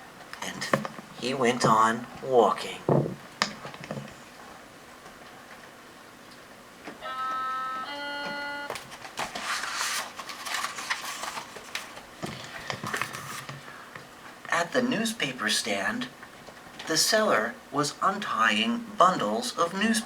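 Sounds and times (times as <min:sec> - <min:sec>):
two-note electronic chime: 0:07.0 - 0:08.7
book page turning: 0:08.7 - 0:13.6.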